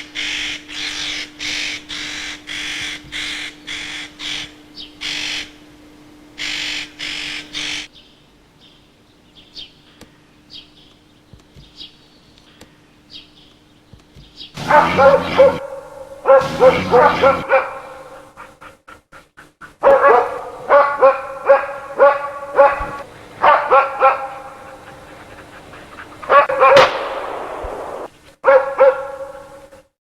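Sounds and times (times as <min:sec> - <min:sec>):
hunting dogs barking: 0:14.6 - 0:29.8.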